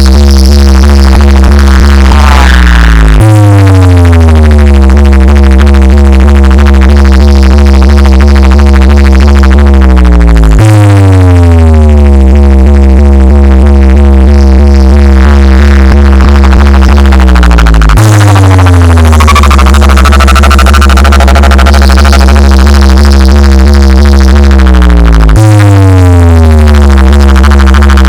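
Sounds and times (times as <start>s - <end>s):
electronic dance music: 0.0s - 28.0s.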